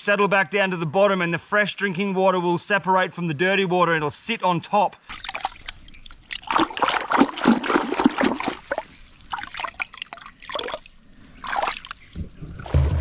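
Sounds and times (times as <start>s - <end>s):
water splashing and sloshing: 5.1s - 13.0s.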